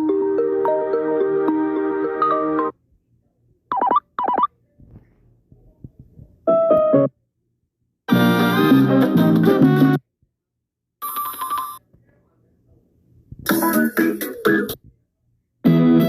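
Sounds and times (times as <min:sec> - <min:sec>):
keyboard-like ringtone melody: 0:00.0 - 0:02.7, 0:03.7 - 0:04.5
phone ringtone melody: 0:11.0 - 0:11.8.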